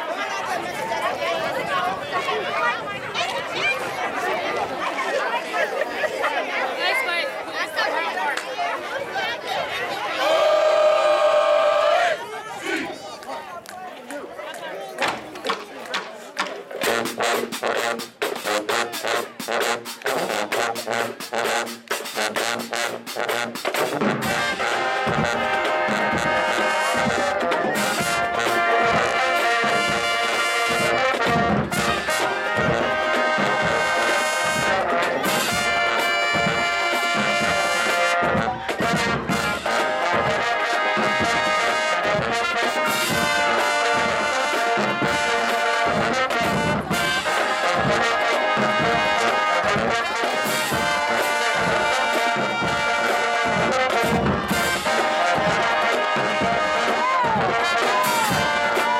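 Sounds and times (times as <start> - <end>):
steady drum beat: 15.4 - 58.9
brass section playing chords: 16.8 - 58.9.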